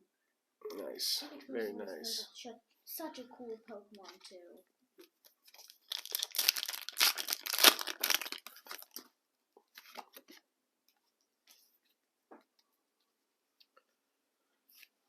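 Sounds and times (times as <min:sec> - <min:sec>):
foil wrapper tearing and crinkling: 0:05.6 - 0:09.0.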